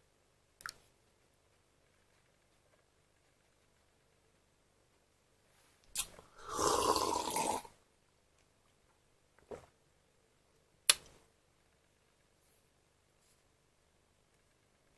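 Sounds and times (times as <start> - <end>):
rustling: 0.9 - 6.2.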